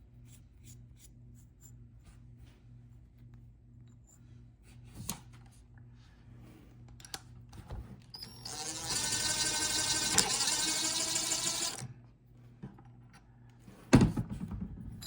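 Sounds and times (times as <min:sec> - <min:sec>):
power tool motor whine: 0:08.2 - 0:11.9.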